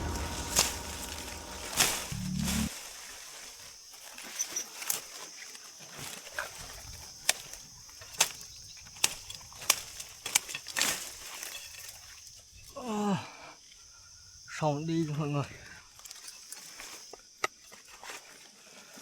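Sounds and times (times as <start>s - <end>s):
insects droning: 0.0s - 2.8s, 7.0s - 17.4s.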